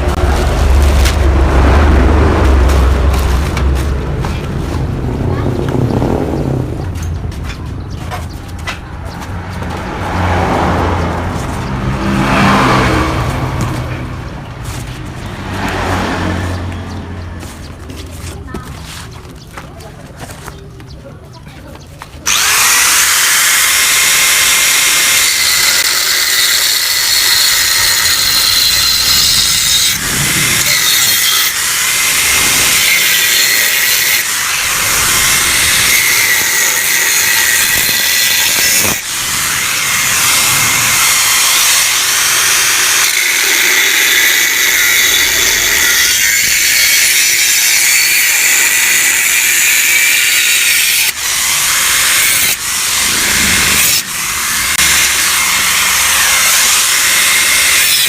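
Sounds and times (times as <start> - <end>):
angle grinder cutting steel: 22.2 - 58.0.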